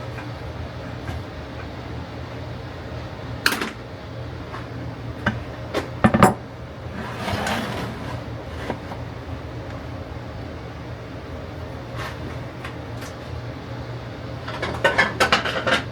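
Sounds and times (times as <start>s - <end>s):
scraping rustle: 6.9s - 9.0s.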